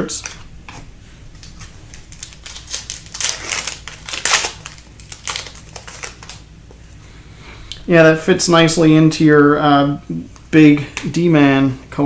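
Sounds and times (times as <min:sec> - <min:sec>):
card packaging clicks and rustles: 0:01.4 - 0:06.4.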